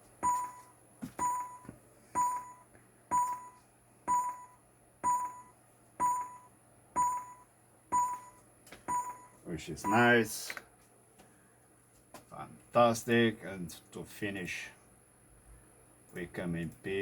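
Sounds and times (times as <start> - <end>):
short computer beeps with click: 0.2 - 7.4, 8.0 - 10.1.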